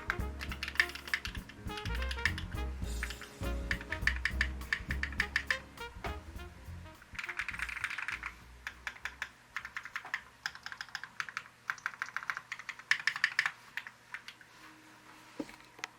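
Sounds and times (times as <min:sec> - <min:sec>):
fast typing on mechanical keyboard: 0:07.3 - 0:14.4.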